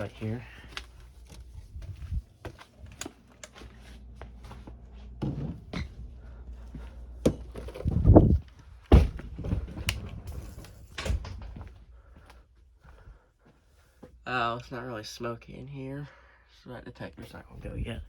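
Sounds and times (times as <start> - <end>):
low steady hum: 0.0 - 18.0
knocks and thumps: 7.2 - 10.0.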